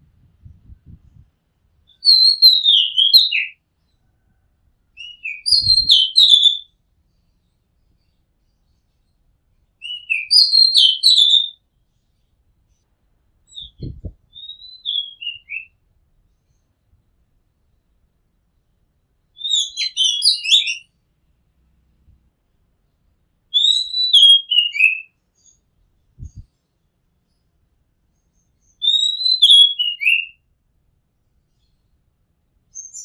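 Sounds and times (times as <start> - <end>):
bird singing whistled notes: 1.9 - 4.4, 5.0 - 6.7, 9.8 - 11.6, 13.5 - 15.8, 19.4 - 20.9, 23.5 - 25.6, 28.3 - 30.4, 32.7 - 33.0.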